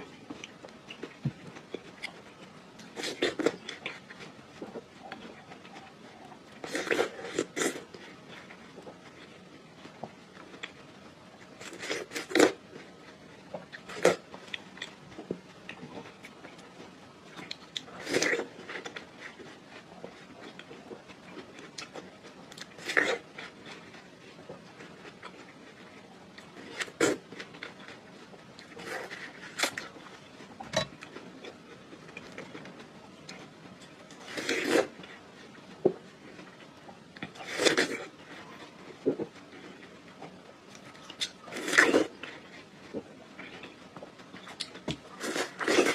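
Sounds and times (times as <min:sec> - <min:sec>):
watermelon bitten and chewed: 0:00.0 - 0:45.9.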